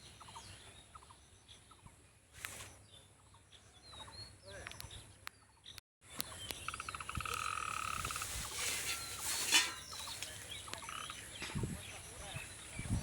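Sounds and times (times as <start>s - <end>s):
frog trilling: 6.6s - 8.4s, 10.8s - 11.2s.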